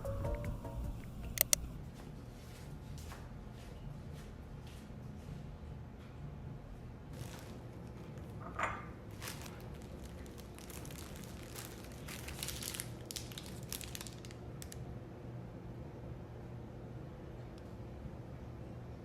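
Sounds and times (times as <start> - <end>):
packaging crinkling: 7.1 - 8.4, 9.0 - 14.8.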